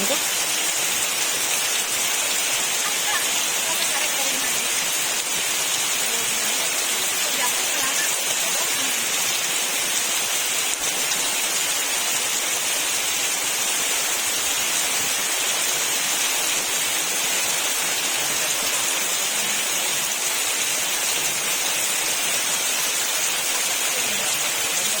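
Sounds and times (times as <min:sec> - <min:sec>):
heavy rain on leaves: 0:00.0 - 0:25.0.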